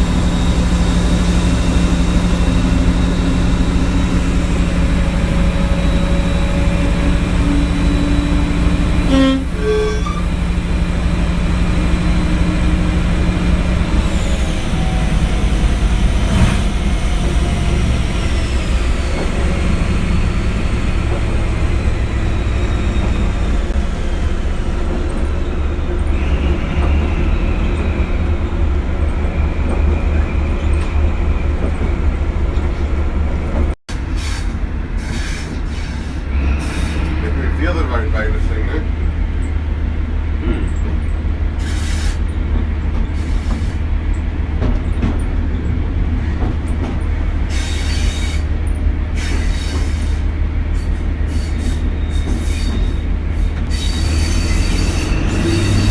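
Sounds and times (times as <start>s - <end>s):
high turbo whine: 0.0s - 33.2s
diesel engine running: 0.0s - 53.7s.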